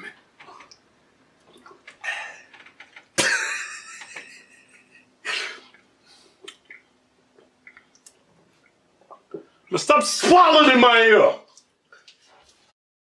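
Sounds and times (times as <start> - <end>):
man coughing: 3.2 - 3.7.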